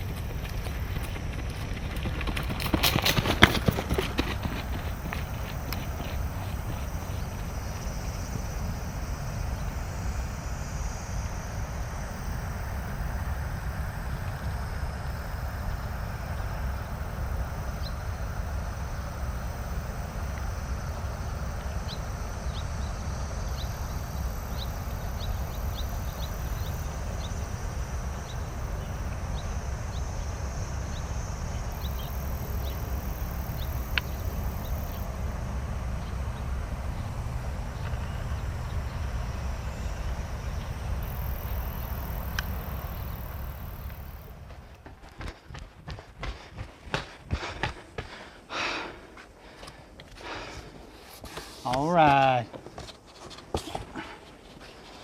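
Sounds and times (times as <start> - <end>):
low rumble: 0.0 - 45.2
faint high ticks: 0.1 - 8.4, 20.0 - 22.6, 31.7 - 35.1, 41.0 - 45.4
faint high hiss: 2.9 - 44.8.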